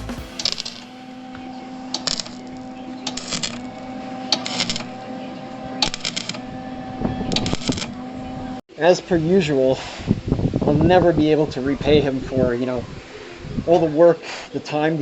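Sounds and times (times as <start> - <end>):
welding crackling: 0.0 - 8.6
steady hum: 0.0 - 13.7.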